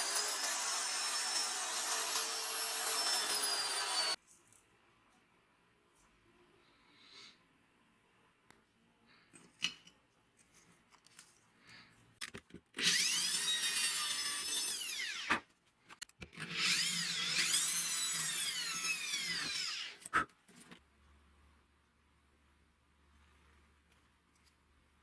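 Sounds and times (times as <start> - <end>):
power drill whirring: 0.0 - 4.2, 12.8 - 15.4, 16.4 - 20.1.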